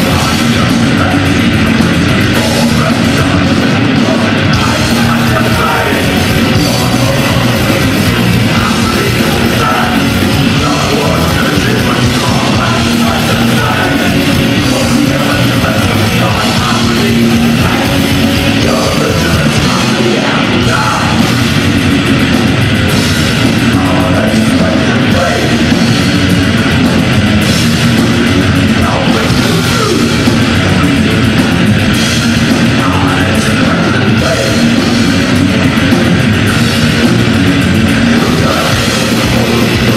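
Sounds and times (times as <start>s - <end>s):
distorted electric guitars: 0.0s - 39.9s
drums: 0.0s - 39.9s.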